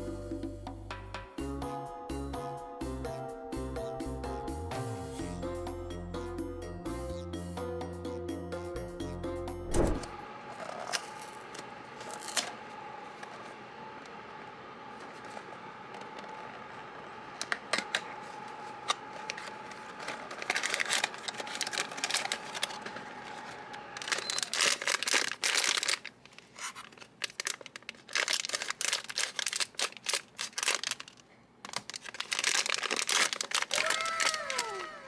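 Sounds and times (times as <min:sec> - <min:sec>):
plastic and foil crinkling: 0:18.8 - 0:35.0.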